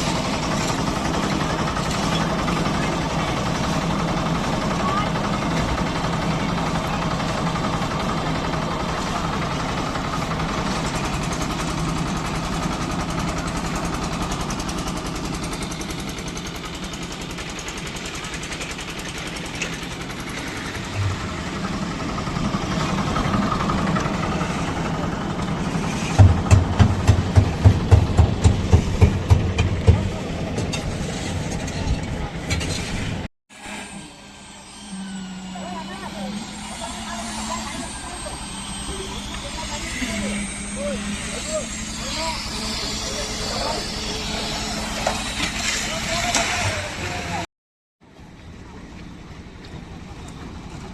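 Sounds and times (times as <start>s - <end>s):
engine running: 0.0s - 47.5s, 48.1s - 50.9s
rapid loud knocks: 26.2s - 30.1s.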